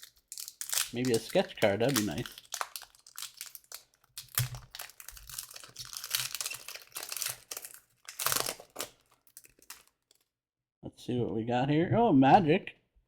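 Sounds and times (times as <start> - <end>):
foil wrapper crinkling and tearing: 0.0 - 10.3.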